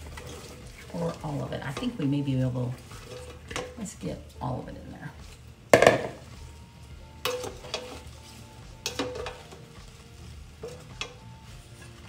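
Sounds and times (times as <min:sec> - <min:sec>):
faint sizzle: 0:00.0 - 0:12.0
utensil scraping a frying pan: 0:00.0 - 0:12.0.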